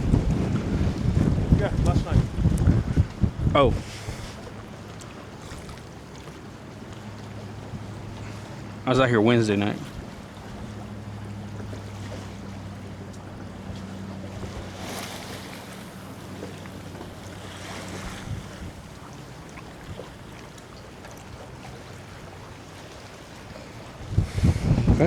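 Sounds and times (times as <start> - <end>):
wind gusting across microphone: 0.0 - 4.6, 13.6 - 19.0, 23.8 - 25.0.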